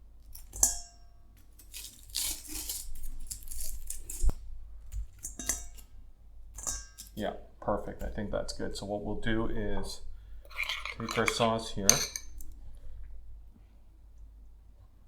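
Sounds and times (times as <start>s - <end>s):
kitchenware clinking: 0.4s - 1.0s, 5.2s - 5.9s, 6.6s - 7.2s, 10.5s - 12.6s.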